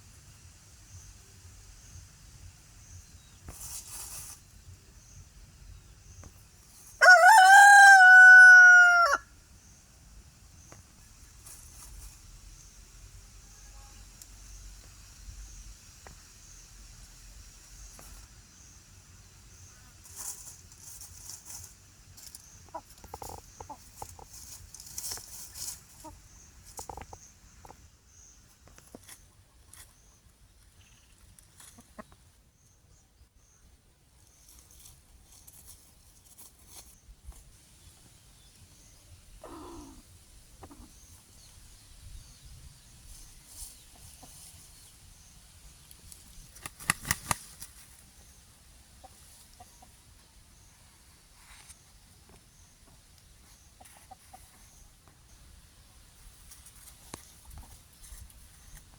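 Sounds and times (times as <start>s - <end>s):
chickens clucking: 22.3s - 27.7s, 31.5s - 32.3s, 39.4s - 41.3s, 43.8s - 44.8s, 49.0s - 50.3s, 53.7s - 54.8s.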